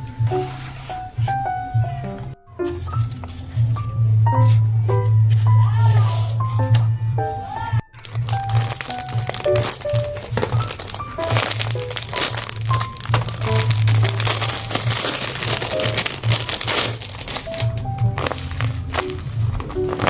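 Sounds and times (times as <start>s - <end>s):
background music: 0.0s - 20.0s
paper crinkling and rustling: 2.7s - 4.7s, 7.9s - 20.0s.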